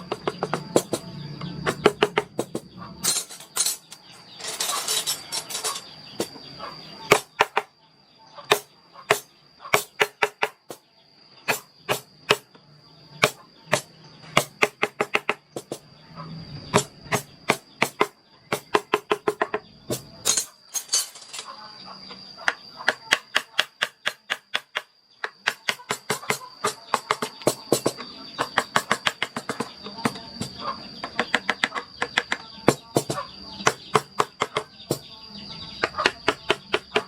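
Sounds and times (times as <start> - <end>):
mallet tapping chisel: 22.9 - 35.0.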